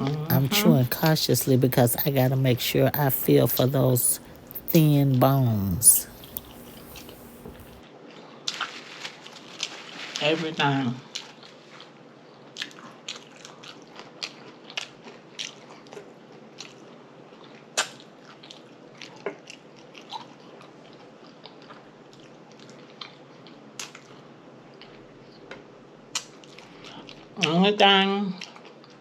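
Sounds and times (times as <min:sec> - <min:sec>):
person chewing food: 0:04.2 - 0:04.7, 0:06.0 - 0:10.0, 0:11.1 - 0:27.4, 0:28.4 - 0:29.0.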